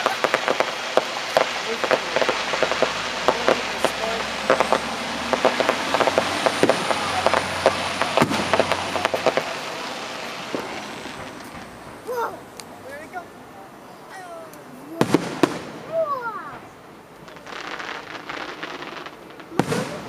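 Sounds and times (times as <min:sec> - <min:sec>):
loud firework bangs: 0:00.0 - 0:12.4, 0:15.0 - 0:20.0
fireworks crackling and popping: 0:00.0 - 0:13.4, 0:14.1 - 0:20.0.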